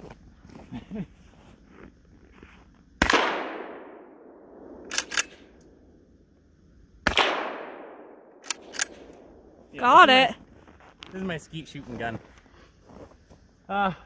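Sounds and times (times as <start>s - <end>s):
shotgun shots echoing: 3.0s - 5.6s, 7.0s - 9.6s
shotgun pump racking clack: 8.4s - 9.2s.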